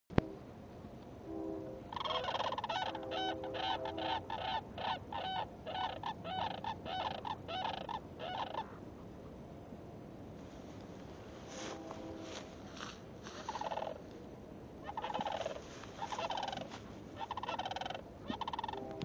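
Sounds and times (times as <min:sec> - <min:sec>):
cranes calling: 0:01.8 - 0:08.8, 0:11.4 - 0:14.1, 0:14.8 - 0:19.0.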